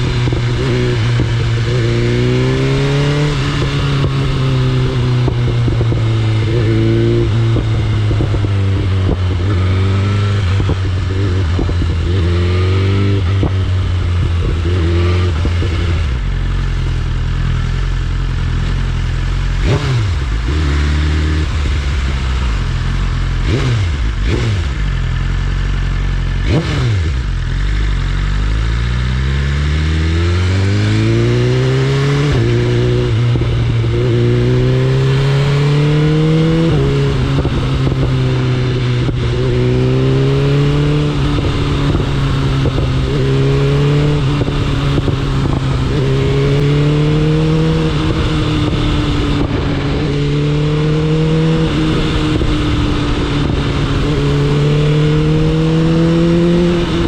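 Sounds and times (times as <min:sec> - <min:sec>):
motorcycle engine accelerating: 0:00.0 - 0:57.0.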